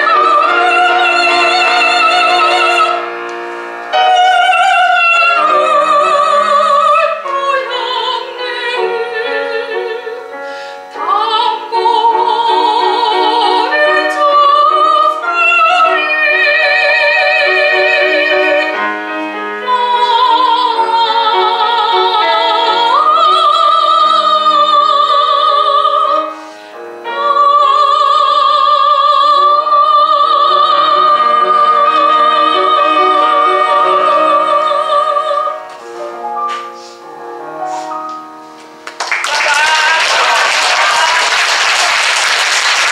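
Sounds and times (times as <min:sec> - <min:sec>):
soprano singing with vibrato: 0:00.0 - 0:03.2, 0:03.9 - 0:36.0
piano accompaniment: 0:00.0 - 0:42.9.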